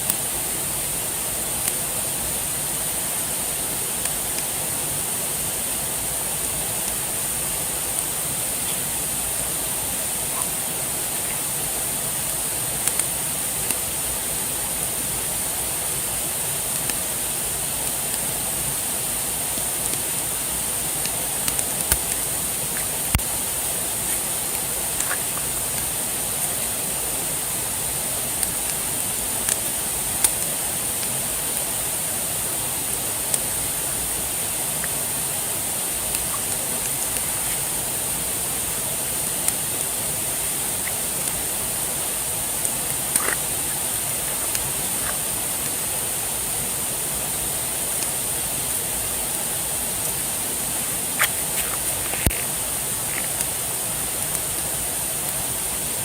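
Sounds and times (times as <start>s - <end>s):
flowing water: 0.0s - 56.0s.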